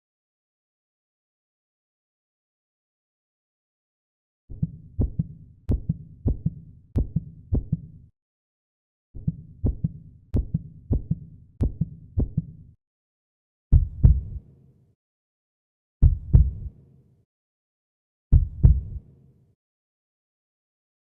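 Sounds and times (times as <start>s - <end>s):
heartbeat thumps: 4.6s - 7.8s, 9.6s - 12.5s, 13.7s - 14.4s, 16.0s - 16.7s, 18.3s - 19.0s.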